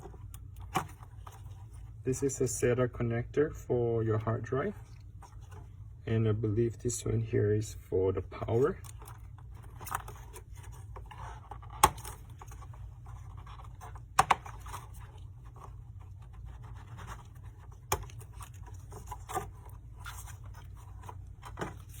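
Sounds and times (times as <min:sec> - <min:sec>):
scratching and scraping handling: 0:00.0 - 0:02.4, 0:04.7 - 0:05.9, 0:08.4 - 0:22.0.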